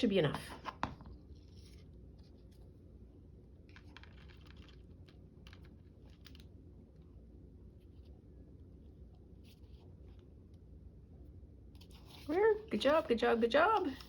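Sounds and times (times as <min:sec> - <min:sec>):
low steady hum: 0:00.0 - 0:14.0
paper rustling and clicks: 0:03.7 - 0:06.5, 0:11.8 - 0:14.0.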